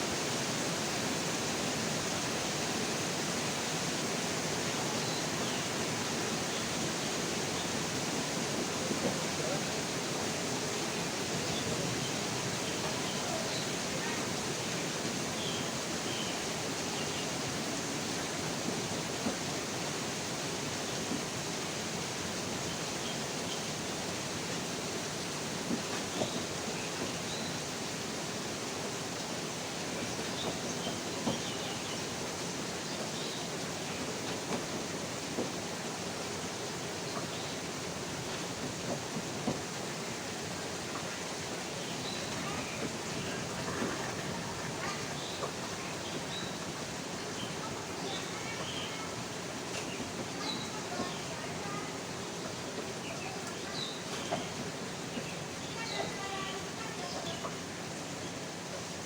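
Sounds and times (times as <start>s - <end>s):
steady rain hiss: 0.0s - 59.0s
sharp taps of raindrops: 30.0s - 31.7s, 33.9s - 35.9s, 37.1s - 40.0s, 49.6s - 57.9s.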